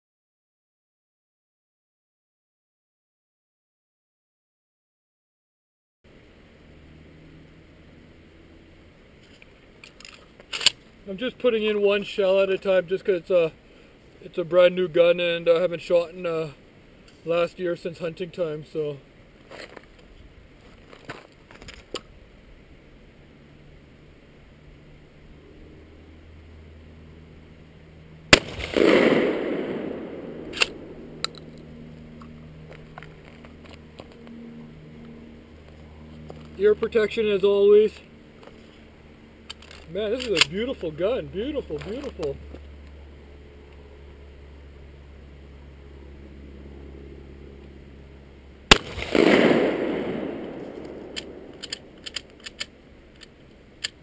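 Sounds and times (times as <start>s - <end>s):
shotgun shot: 28.3s - 31.2s, 48.7s - 51.9s
shotgun pump clicks: 30.4s - 31.6s, 39.4s - 40.6s, 50.5s - 54.0s.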